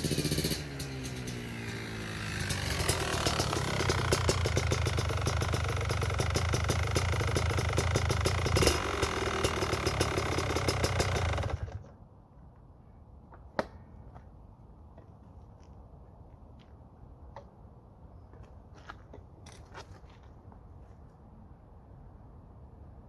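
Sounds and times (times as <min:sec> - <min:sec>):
dirt bike engine running: 0:00.0 - 0:11.8.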